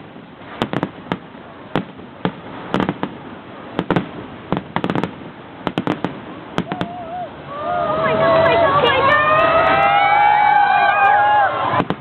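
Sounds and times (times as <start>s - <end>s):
fireworks banging: 0.0s - 7.4s, 11.6s - 12.0s.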